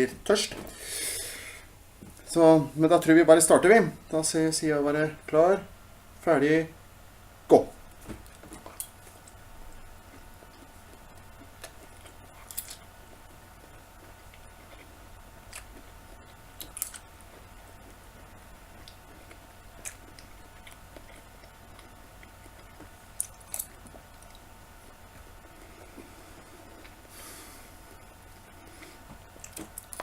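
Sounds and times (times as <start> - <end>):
person chewing: 8.4 - 30.0.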